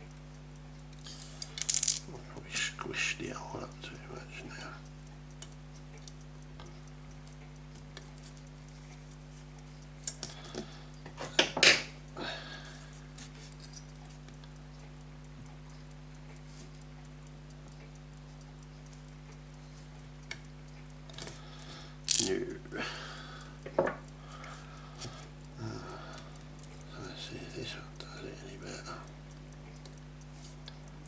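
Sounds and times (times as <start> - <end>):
steady low hum: 0.0 - 31.0
metal tools tapping watch parts: 10.0 - 12.0.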